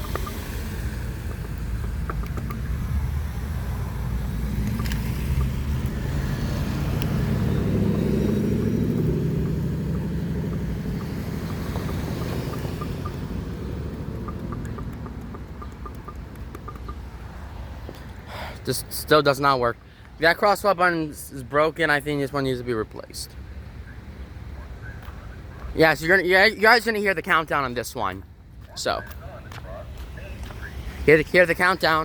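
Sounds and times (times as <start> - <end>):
car passing by: 0.0 - 15.6.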